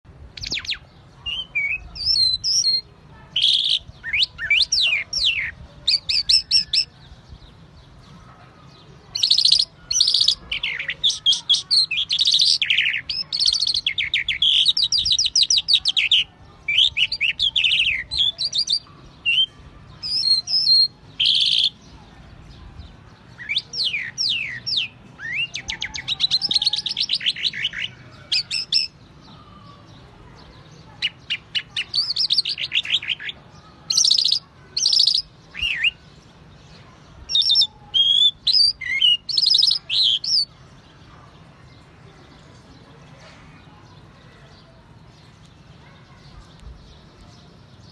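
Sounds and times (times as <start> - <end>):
songbird singing trills: 0.1 - 47.9.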